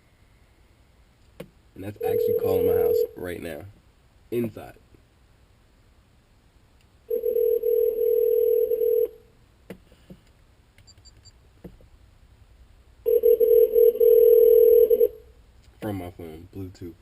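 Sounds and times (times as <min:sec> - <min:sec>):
telephone ringback tone: 0:02.0 - 0:03.2, 0:07.1 - 0:09.2, 0:13.1 - 0:15.2.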